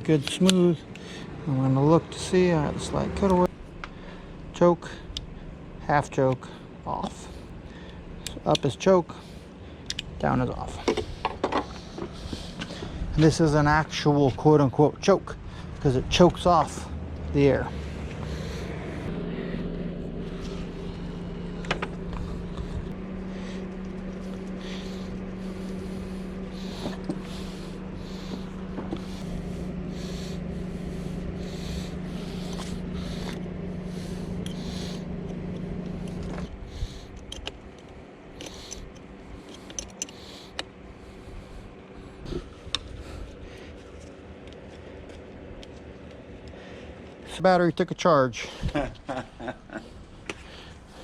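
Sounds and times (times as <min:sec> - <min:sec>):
machine humming: 0:16.7 - 0:47.2
clicks and scrapes of parts: 0:34.4 - 0:40.7.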